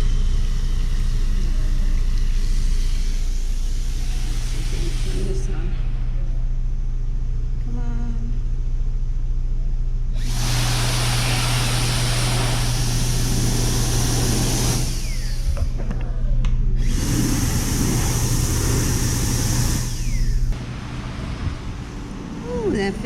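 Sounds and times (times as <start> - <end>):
electric hand dryer blowing: 0.0 - 6.1, 10.2 - 15.8, 16.8 - 23.0
steady low hum: 0.0 - 23.0.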